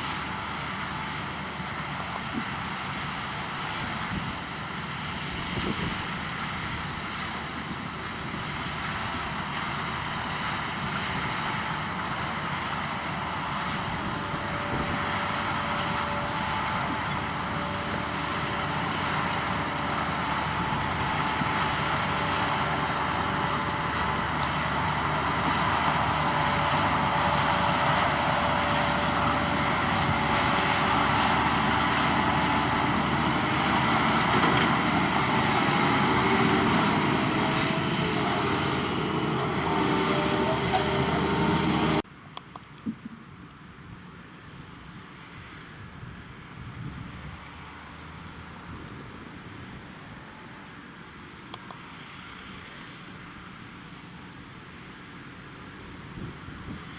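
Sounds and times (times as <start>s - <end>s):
heavy harvesting machinery rumbling: 0.0s - 42.2s, 44.0s - 56.9s
held whining tones: 11.5s - 42.0s.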